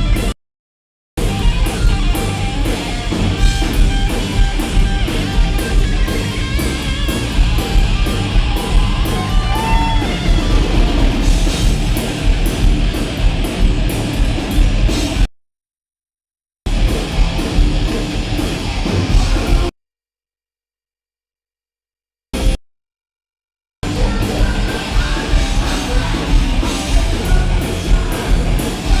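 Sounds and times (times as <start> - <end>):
distorted electric guitars: 0.0 - 0.3, 1.2 - 15.3, 16.7 - 19.7, 23.8 - 29.0
heavy metal band playing live: 0.0 - 0.3, 1.2 - 15.2, 16.7 - 19.7, 23.8 - 29.0
pounding drum kit: 0.0 - 0.3, 1.2 - 15.3, 16.7 - 19.7, 23.8 - 29.0.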